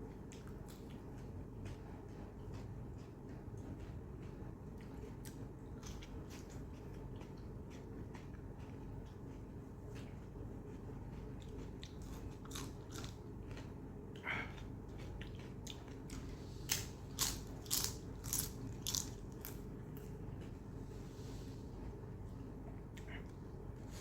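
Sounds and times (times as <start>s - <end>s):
close-miked chewing and biting: 0.2s - 4.0s, 4.7s - 10.2s, 11.2s - 20.1s.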